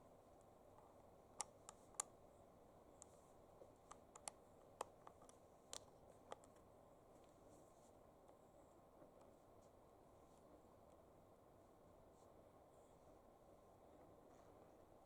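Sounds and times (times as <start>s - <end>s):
light sharp clicks: 0.7s - 2.2s, 3.0s - 7.4s.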